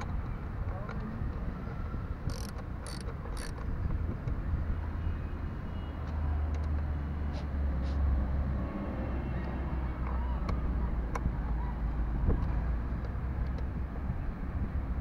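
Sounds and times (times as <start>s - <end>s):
wrench ratcheting: 2.3s - 3.6s.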